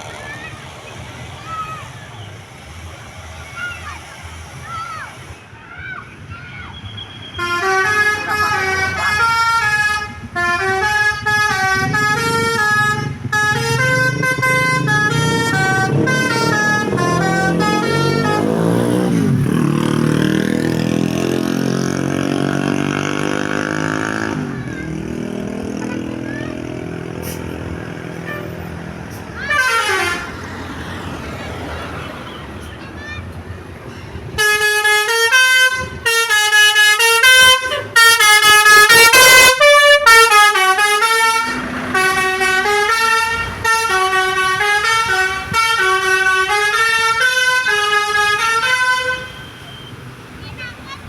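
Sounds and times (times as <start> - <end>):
bus musical air horn tune: 7.0 - 19.7, 26.9 - 30.5, 34.3 - 50.0
falling horn toot: 7.3 - 21.3, 29.3 - 30.4.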